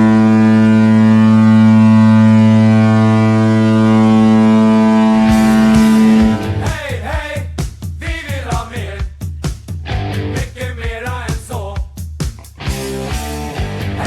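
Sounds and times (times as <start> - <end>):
goal horn blowing low note: 0.0 - 6.7
rock music: 4.8 - 6.9, 9.8 - 10.6, 12.4 - 14.0.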